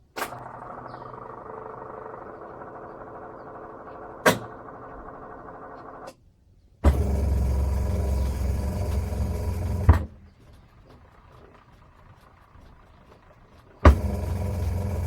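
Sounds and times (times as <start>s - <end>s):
washing machine motor humming: 0.0s - 6.1s, 6.8s - 15.0s
faint whir: 0.0s - 15.0s
switch click: 2.4s - 6.2s.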